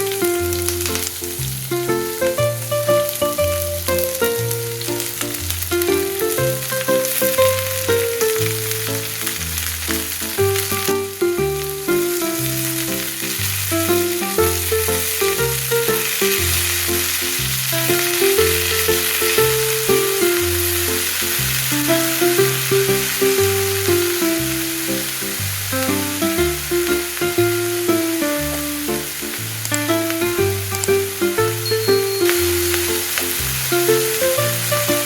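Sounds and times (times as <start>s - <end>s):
food sizzling in hot oil: 0.0s - 35.0s
music with plucked melody: 0.0s - 35.0s
walking bass line: 0.0s - 35.0s.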